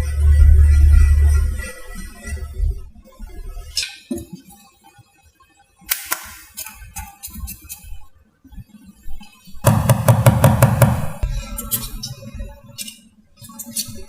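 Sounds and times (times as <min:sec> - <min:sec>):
sharp knocks and clicks: 0:09.7 - 0:11.3.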